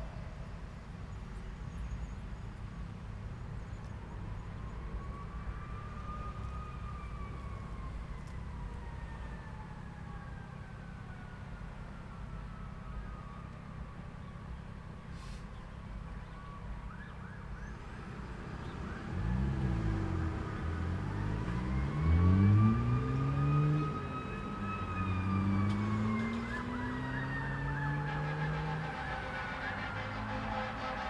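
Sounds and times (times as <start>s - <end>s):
road traffic: 0.0s - 31.0s
siren wailing: 4.3s - 13.9s, 18.8s - 31.0s
vehicle engine revving: 19.0s - 31.0s.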